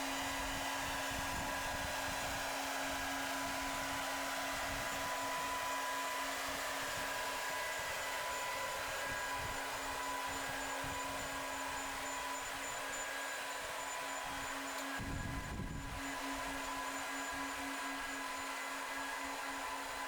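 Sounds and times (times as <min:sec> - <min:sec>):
constant low hum: 0:09.3 - 0:20.0.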